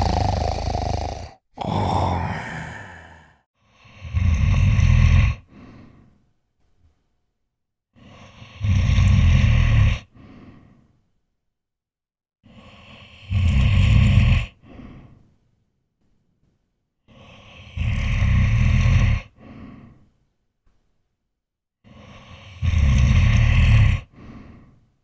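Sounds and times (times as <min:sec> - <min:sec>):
soft breathing: 0:00.0 - 0:03.5, 0:05.4 - 0:07.1, 0:10.1 - 0:11.1, 0:14.6 - 0:15.4, 0:19.3 - 0:20.8, 0:24.0 - 0:25.0
person snoring: 0:00.0 - 0:06.1, 0:08.0 - 0:10.8, 0:12.5 - 0:15.2, 0:17.1 - 0:20.0, 0:21.9 - 0:24.8.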